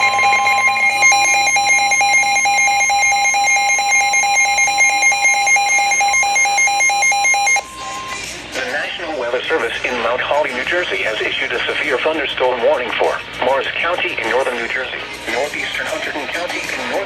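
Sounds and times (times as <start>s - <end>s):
rapid electronic beeping: 0.0s - 8.3s
steady warning alarm tone: 0.0s - 8.8s.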